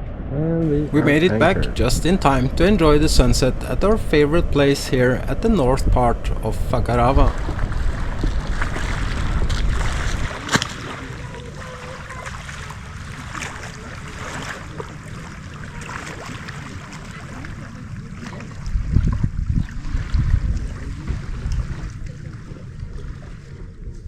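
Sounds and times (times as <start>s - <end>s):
wind rumble: 0.0s - 15.8s, 16.5s - 24.0s
hiss of wind and water: 0.3s - 24.0s
small splashes: 6.9s - 23.8s.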